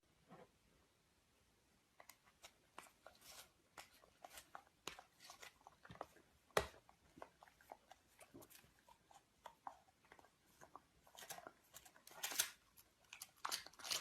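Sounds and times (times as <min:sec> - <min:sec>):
dog crunching food: 0:04.0 - 0:14.0.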